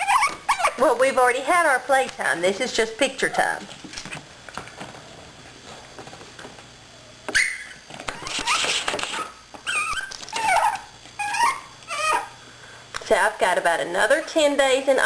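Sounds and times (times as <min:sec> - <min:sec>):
puppy yelping and whining: 0:00.0 - 0:00.8, 0:07.3 - 0:12.4.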